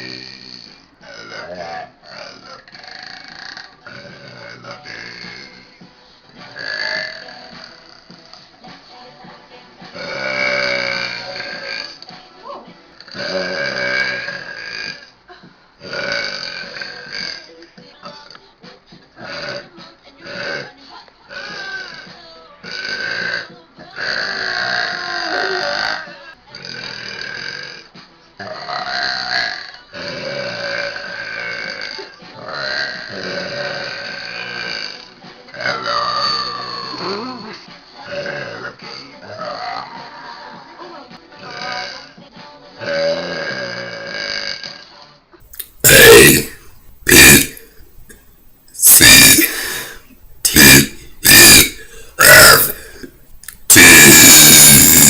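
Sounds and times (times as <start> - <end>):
woman burping: 45.5 - 55.0.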